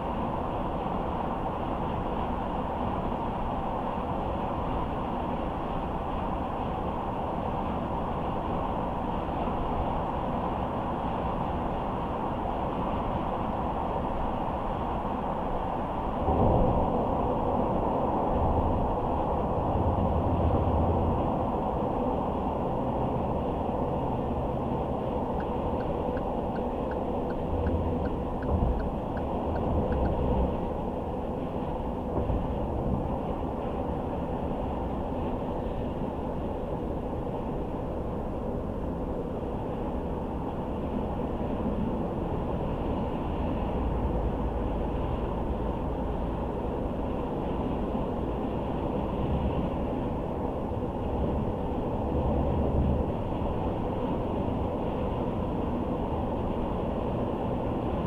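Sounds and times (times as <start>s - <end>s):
car tyre and engine noise: 0.0s - 58.0s
light regular ticks: 25.4s - 30.2s.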